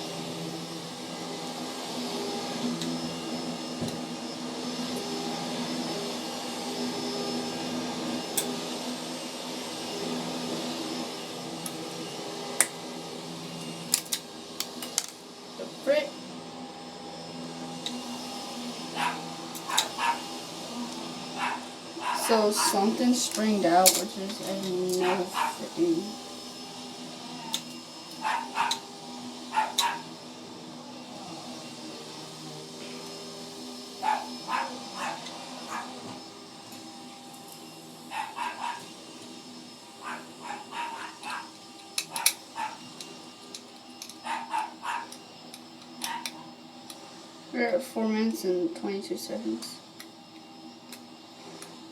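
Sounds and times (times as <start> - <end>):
vacuum cleaner running: 0.0 - 51.9
dog yipping: 19.0 - 20.2, 21.4 - 22.8, 25.0 - 25.6, 28.2 - 28.8, 29.5 - 30.0, 34.0 - 35.9, 38.1 - 38.8, 40.0 - 41.5, 42.1 - 42.8, 44.2 - 45.1.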